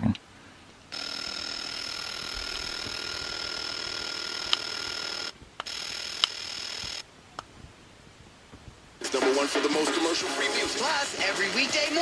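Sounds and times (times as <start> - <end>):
sharp clicks: 0.9 - 7.5.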